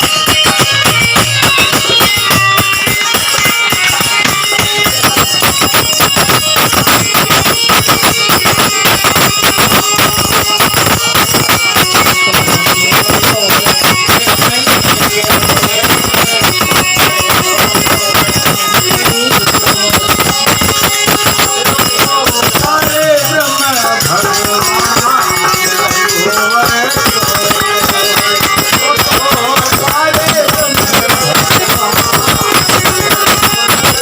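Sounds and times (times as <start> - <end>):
fast dense percussion: 0.0 - 34.0.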